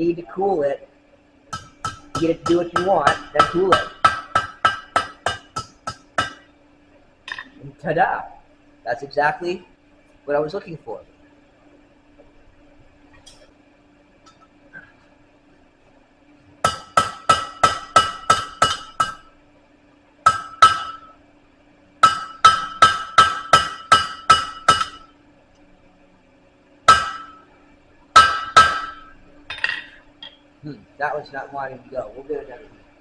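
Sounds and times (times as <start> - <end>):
hammer striking steel on anvil: 1.5 - 6.4, 16.6 - 19.2, 20.3 - 21.1, 22.0 - 25.1, 26.9 - 27.4, 28.2 - 30.4.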